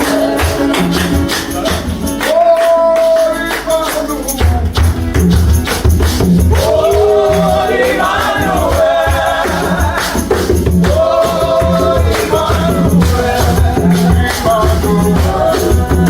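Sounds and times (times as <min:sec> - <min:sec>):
light percussion: 0:00.0 - 0:16.0
choir singing gliding notes: 0:06.6 - 0:10.1.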